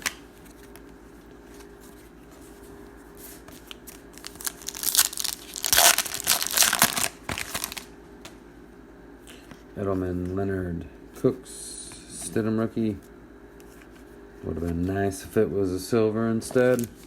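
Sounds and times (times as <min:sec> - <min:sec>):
card pack wrapper tearing and crinkling: 0:03.6 - 0:07.9, 0:16.6 - 0:17.0.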